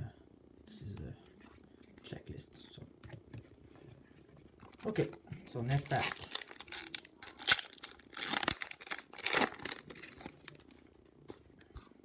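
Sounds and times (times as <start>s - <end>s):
wrapper tearing and crinkling: 4.7s - 10.8s.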